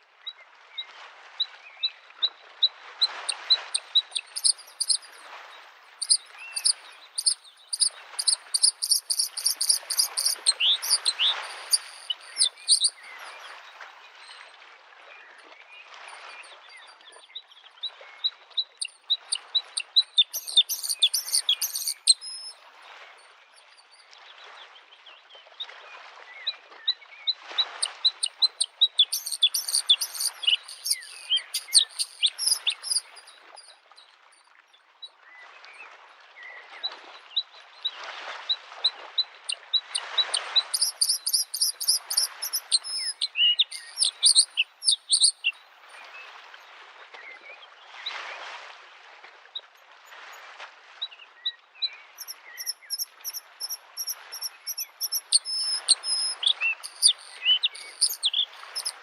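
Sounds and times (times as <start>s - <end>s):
lake waves lapping at shore: 0.1s - 59.0s
bird singing high notes: 4.0s - 5.2s, 6.0s - 13.2s, 20.2s - 22.5s, 28.2s - 33.3s, 40.8s - 45.5s, 52.2s - 59.0s.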